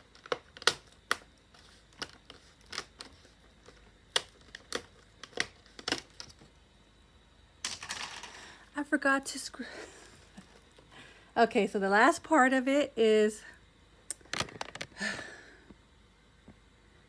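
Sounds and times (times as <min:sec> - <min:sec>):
laptop parts clicking and tapping: 0:00.0 - 0:01.3, 0:01.9 - 0:06.4.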